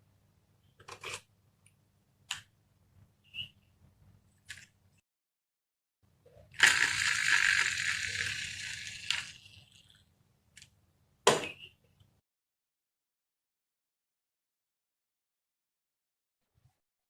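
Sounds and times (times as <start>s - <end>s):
marbles rolling down track: 6.6s - 9.6s.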